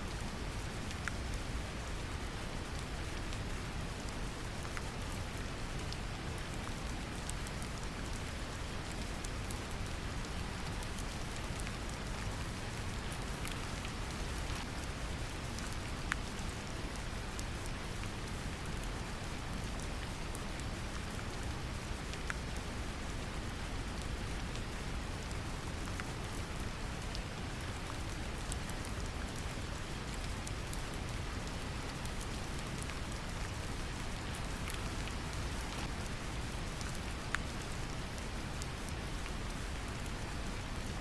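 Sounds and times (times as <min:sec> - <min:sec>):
gentle rain drops: 0:00.0 - 0:41.0.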